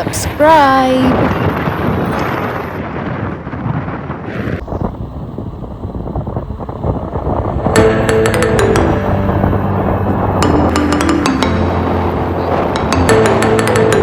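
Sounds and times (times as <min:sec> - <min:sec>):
loud low rumbling: 0:00.0 - 0:14.0
music with chime-like strikes: 0:07.8 - 0:14.0.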